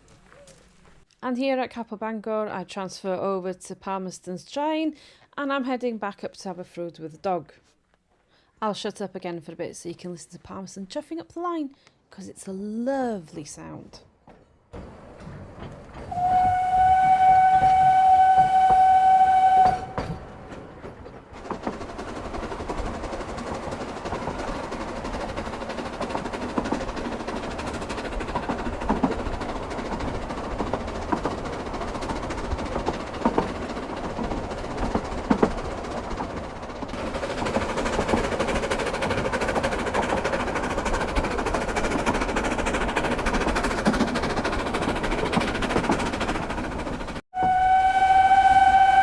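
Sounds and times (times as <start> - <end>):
steam locomotive running: 14.8 - 49.0
steam whistle: 16.1 - 20.2, 47.4 - 49.0.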